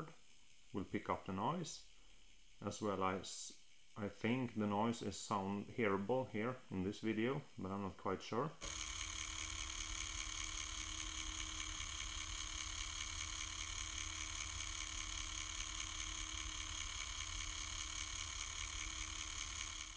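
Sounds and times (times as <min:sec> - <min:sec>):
small electric motor humming: 0:08.6 - 0:19.9.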